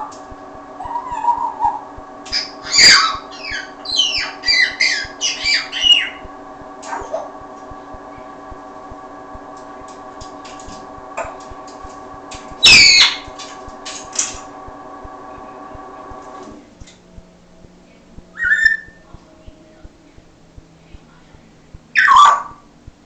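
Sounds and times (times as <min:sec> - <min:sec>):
steady hum: 0:00.0 - 0:23.0
parrot harsh call: 0:00.8 - 0:06.2, 0:12.6 - 0:13.2.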